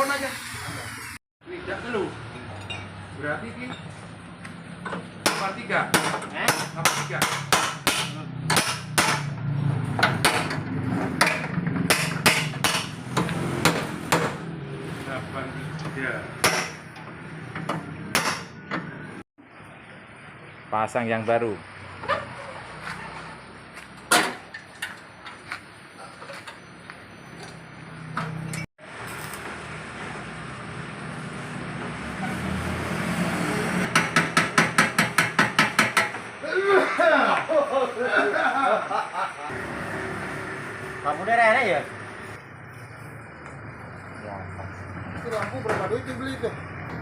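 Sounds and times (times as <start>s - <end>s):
hammer striking metal: 5.2s - 9.4s, 10.0s - 14.4s, 16.4s - 17.0s, 17.6s - 18.9s, 33.9s - 36.3s
tools and parts knocking: 33.9s - 36.3s.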